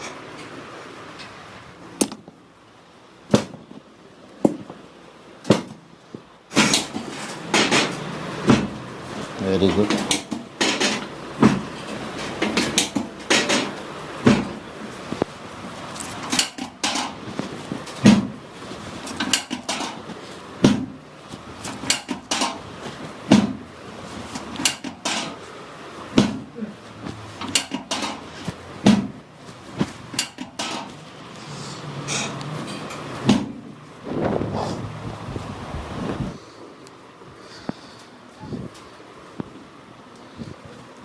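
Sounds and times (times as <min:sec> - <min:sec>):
sharp knocks and thuds: 0:03.3 - 0:04.8, 0:05.4 - 0:08.9, 0:09.7 - 0:14.6, 0:16.1 - 0:18.4, 0:19.0 - 0:23.7, 0:26.1 - 0:31.0, 0:33.2 - 0:34.6.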